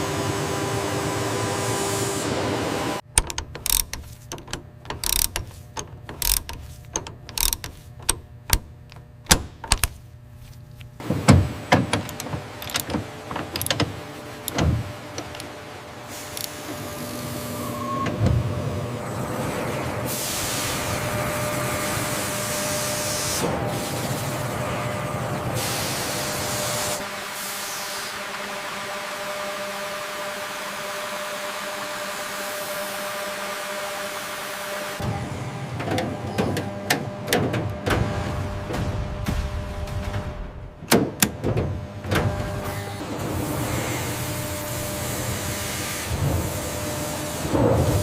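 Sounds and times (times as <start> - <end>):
machinery hum: 0.0 - 26.9
metallic clicks and knocks from tools: 3.0 - 10.0, 11.8 - 15.6.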